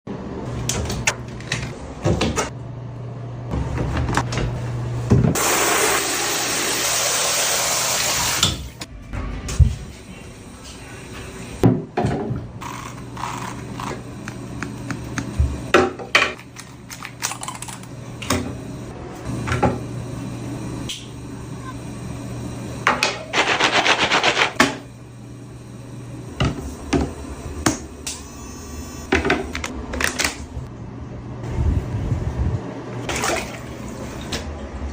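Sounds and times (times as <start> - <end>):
shower spraying water: 5.4 - 8.7
steady low hum: 24.2 - 34.9.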